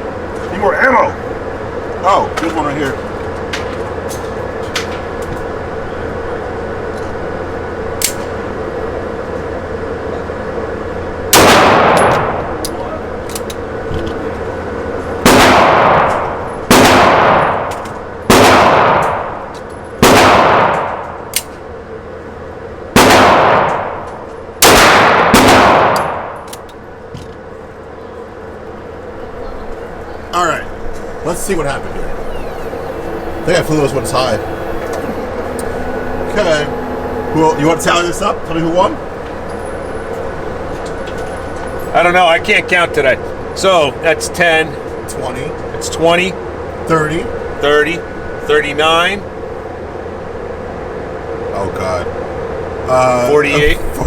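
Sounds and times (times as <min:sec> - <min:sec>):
pistol shots with echo: 0:20.0 - 0:21.0, 0:23.0 - 0:24.0, 0:24.6 - 0:26.5.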